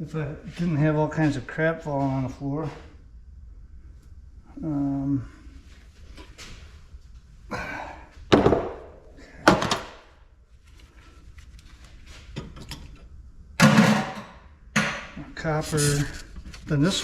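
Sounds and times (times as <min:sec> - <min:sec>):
clanking metal thump: 0:13.6 - 0:15.2.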